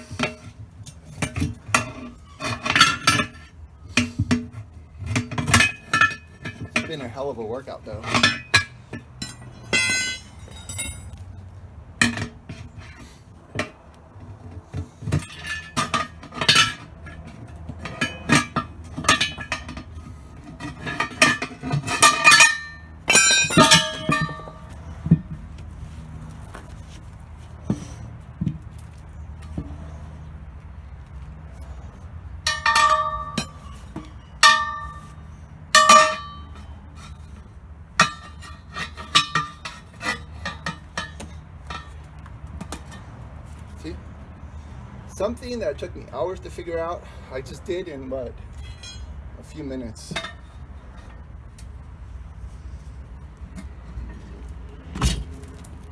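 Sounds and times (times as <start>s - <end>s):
crowbars clanking on metal rim: 0.0s - 11.3s, 12.0s - 30.4s, 31.2s - 55.9s
ringing metal clangs: 5.2s - 11.2s, 15.2s - 25.4s, 32.4s - 37.4s, 38.0s - 42.0s, 48.1s - 51.2s.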